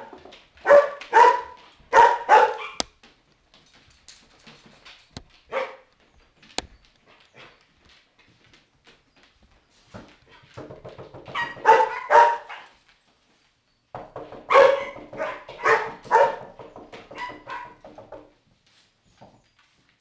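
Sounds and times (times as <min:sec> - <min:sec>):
small dogs barking: 0:00.6 - 0:02.8, 0:05.5 - 0:05.9, 0:11.3 - 0:12.8, 0:14.5 - 0:17.8.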